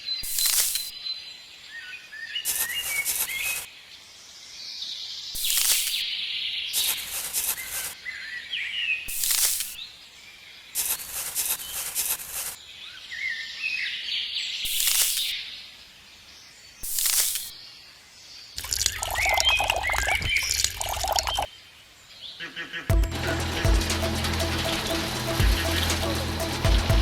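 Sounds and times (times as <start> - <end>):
small birds chirping: 0.0 - 22.6
bursts of hissing scraping noise: 0.2 - 0.9, 5.4 - 6.0, 6.8 - 8.0, 9.1 - 9.8, 10.8 - 12.6, 14.7 - 15.4, 16.8 - 17.5.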